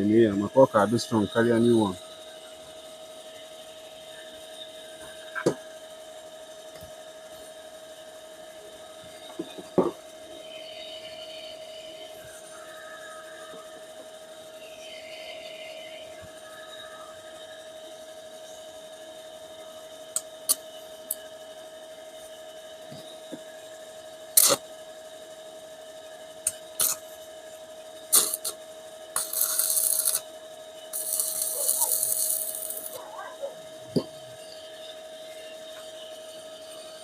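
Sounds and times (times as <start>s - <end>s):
steady hum: 0.0s - 37.0s
high rasping noise: 29.2s - 30.2s, 30.9s - 34.5s.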